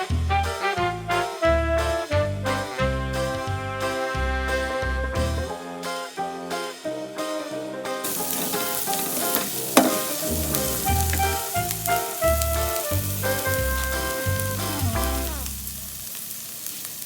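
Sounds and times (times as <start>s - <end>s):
background music: 0.0s - 15.8s
vegetables sizzling in a pan: 8.0s - 17.0s
stirring in a pan: 8.1s - 14.7s.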